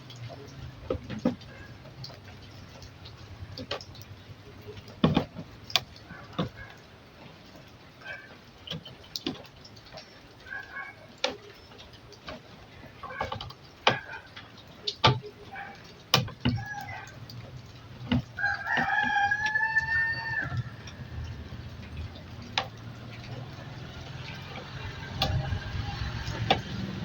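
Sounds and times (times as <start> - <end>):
sharp clicks and knocks: 16.1 - 27.0
rooster crowing: 16.5 - 17.2, 18.4 - 21.7.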